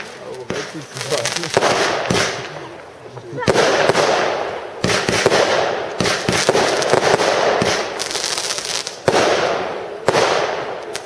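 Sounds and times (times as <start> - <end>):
small cracks pattering: 0.0 - 4.2, 10.1 - 11.0
firework bangs: 0.0 - 11.0
firework crackling: 0.0 - 11.0.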